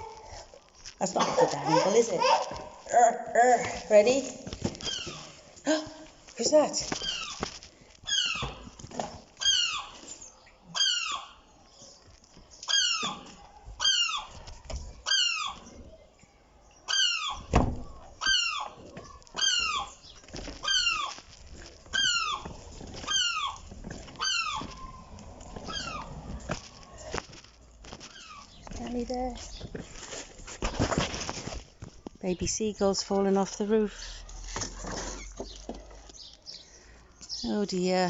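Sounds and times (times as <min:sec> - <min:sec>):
gull chick peeping: 0:21.9 - 0:26.2.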